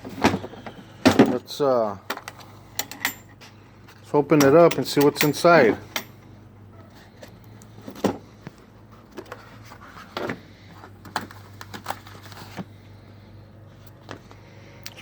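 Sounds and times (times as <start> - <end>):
metal tools handled: 4.4 - 6.2.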